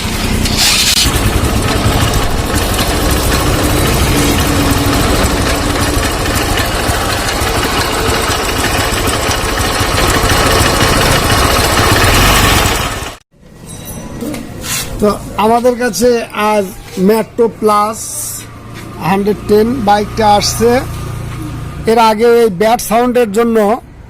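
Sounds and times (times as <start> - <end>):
loud mechanical engine noise: 0.0 - 13.2, 16.5 - 22.6
motorcycle engine running: 0.0 - 13.2.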